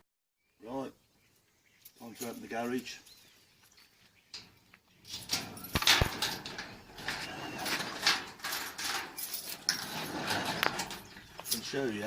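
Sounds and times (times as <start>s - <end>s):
garage door rattling and scraping: 4.4s - 12.0s.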